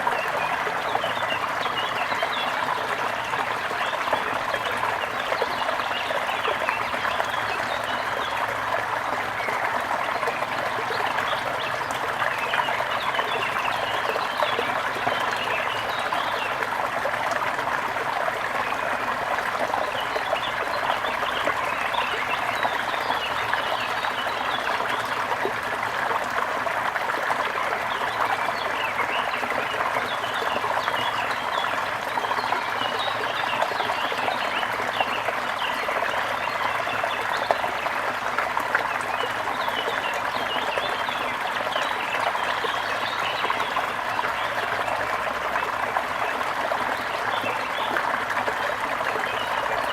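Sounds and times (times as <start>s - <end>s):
water splashes and trickles: 0.0s - 49.9s.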